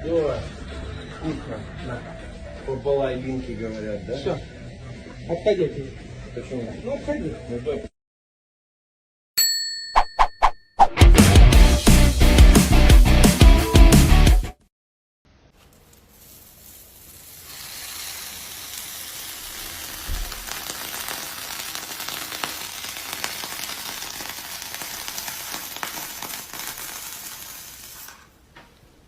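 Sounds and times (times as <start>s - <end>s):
food sizzling on a grill: 15.6s - 28.4s.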